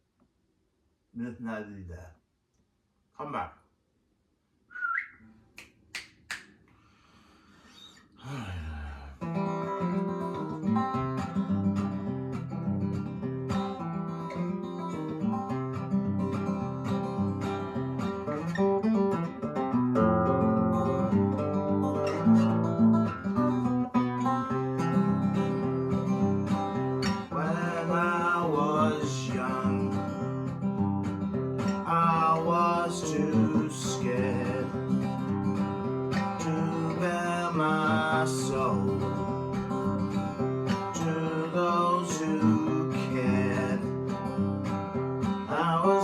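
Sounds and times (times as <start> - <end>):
acoustic guitar strumming: 9.2 - 46.0.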